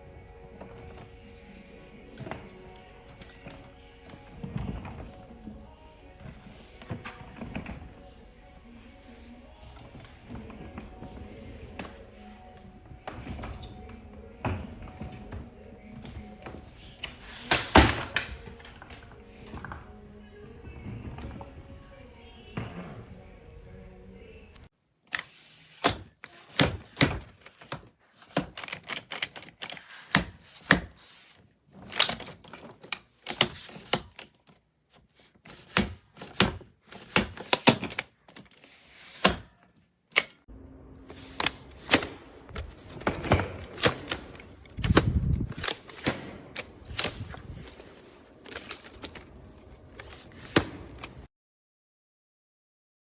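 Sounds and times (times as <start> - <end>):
suitcase clicks and knocks: 0.1 - 8.4, 41.9 - 51.3.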